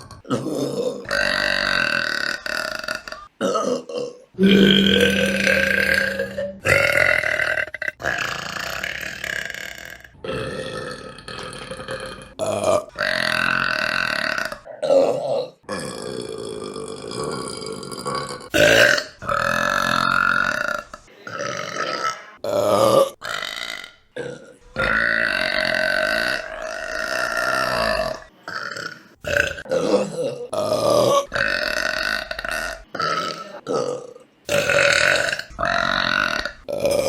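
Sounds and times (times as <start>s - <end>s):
women burping: 0.0s - 8.0s.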